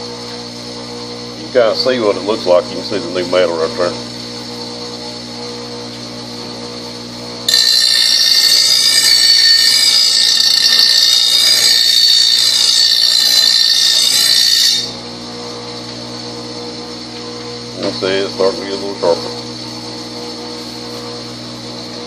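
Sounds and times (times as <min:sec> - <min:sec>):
bench grinder motor humming: 0:06.1 - 0:22.0
metal blade grinding: 0:07.5 - 0:15.0.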